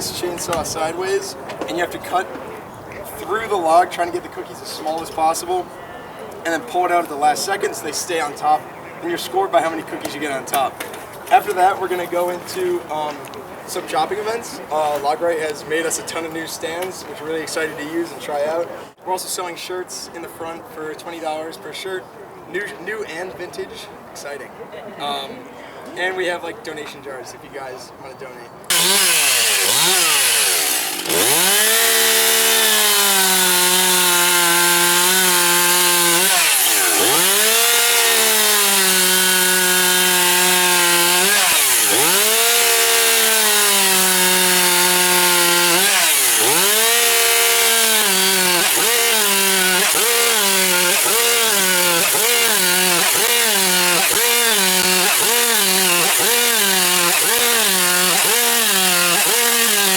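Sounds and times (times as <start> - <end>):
chainsaw cutting log: 0.0 - 1.0, 28.7 - 59.9.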